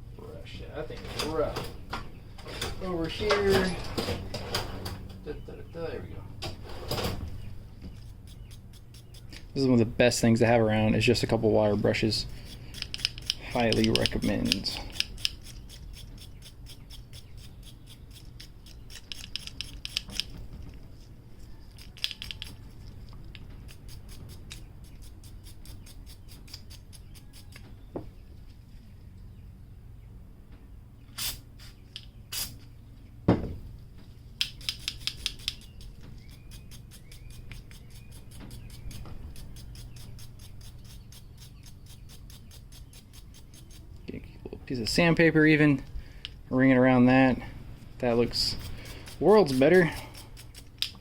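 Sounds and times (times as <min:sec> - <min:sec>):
wire brush scrubbing metal: 0:07.9 - 0:10.2, 0:11.9 - 0:20.1, 0:23.6 - 0:27.6, 0:34.5 - 0:44.1, 0:48.0 - 0:51.0.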